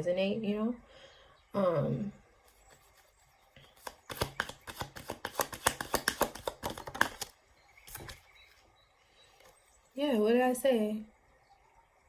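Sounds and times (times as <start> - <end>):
cards being shuffled: 2.6 - 8.2.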